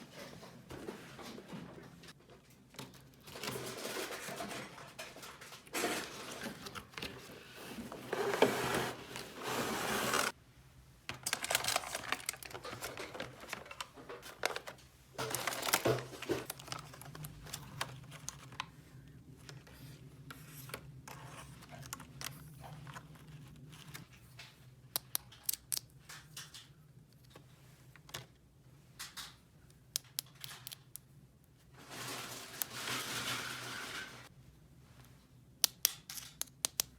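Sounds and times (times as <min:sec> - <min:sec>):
plastic and paper rustling: 0:02.4 - 0:10.4, 0:11.1 - 0:24.4, 0:31.8 - 0:34.3.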